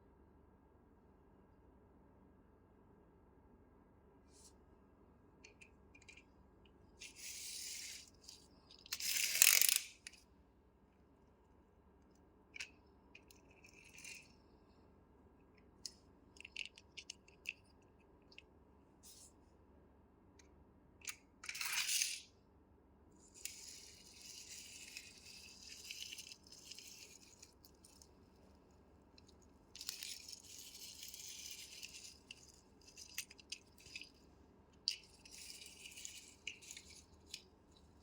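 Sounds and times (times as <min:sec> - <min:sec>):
small hard objects rattling: 0:07.1 - 0:10.0, 0:24.2 - 0:28.1, 0:29.8 - 0:34.2, 0:34.9 - 0:37.4.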